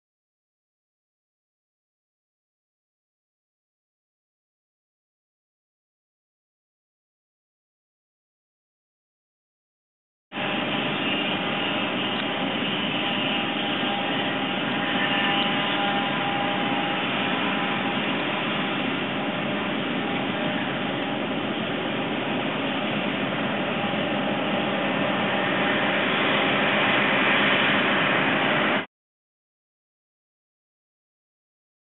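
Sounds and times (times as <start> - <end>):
forage harvester running: 10.4 - 28.9.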